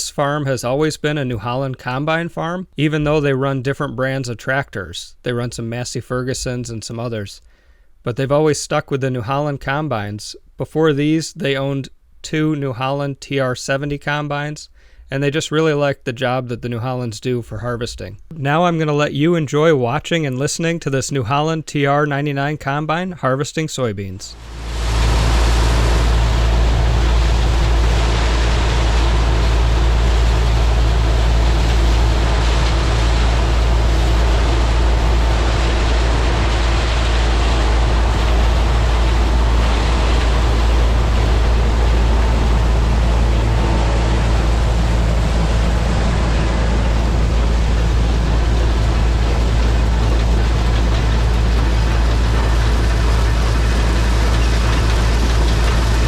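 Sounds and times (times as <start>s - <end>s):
combine harvester engine droning: 24.3s - 56.0s.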